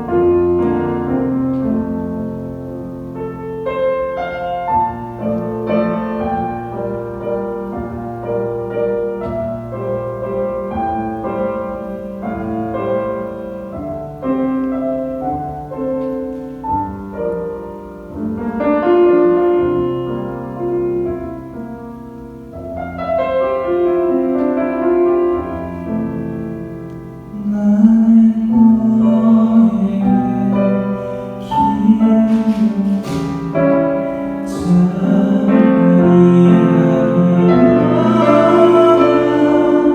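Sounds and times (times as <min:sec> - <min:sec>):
solo piano ballad: 0:00.0 - 0:39.9
man singing: 0:27.3 - 0:39.9.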